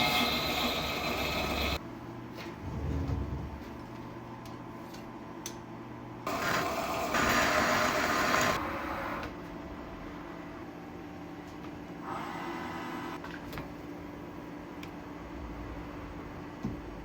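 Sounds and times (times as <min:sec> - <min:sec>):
metal lathe humming: 0:00.0 - 0:01.8.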